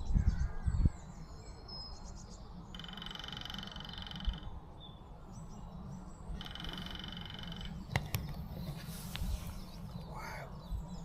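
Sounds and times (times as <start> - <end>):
woodpecker drumming: 2.7 - 4.5, 6.4 - 8.4.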